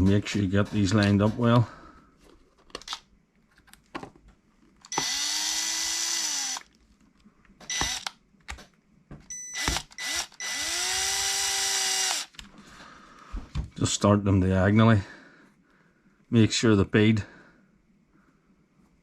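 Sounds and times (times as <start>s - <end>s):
plastic parts clicking: 2.6s - 4.1s
cordless driver whirring: 4.9s - 6.7s, 7.6s - 8.1s, 9.6s - 12.4s.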